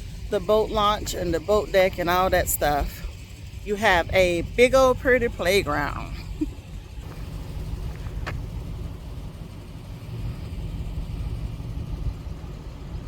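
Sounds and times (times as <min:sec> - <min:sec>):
car engine rumbling: 0:00.0 - 0:13.0.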